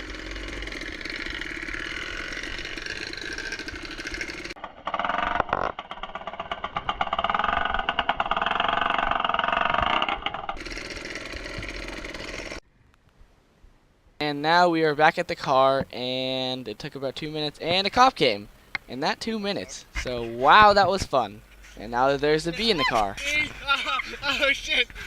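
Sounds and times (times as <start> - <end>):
dirt bike engine running: 0.0 - 12.6.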